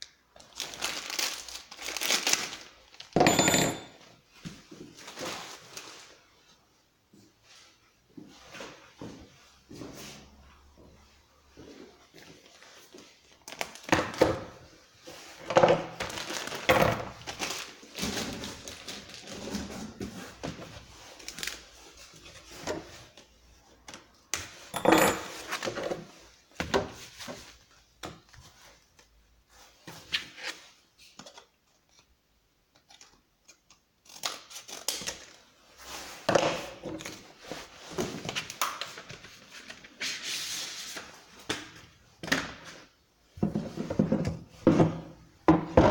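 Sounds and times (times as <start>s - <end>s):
packaging rustling: 0.4s - 3.2s, 16.0s - 20.0s
knocks and clinks of parts: 3.2s - 4.1s.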